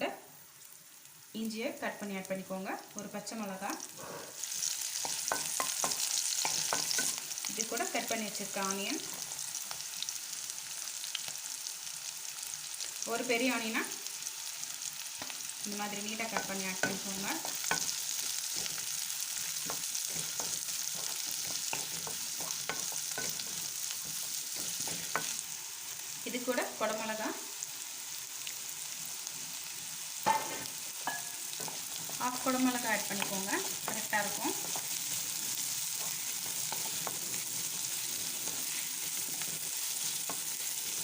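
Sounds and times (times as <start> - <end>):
vegetables sizzling in hot oil: 0.0 - 41.0.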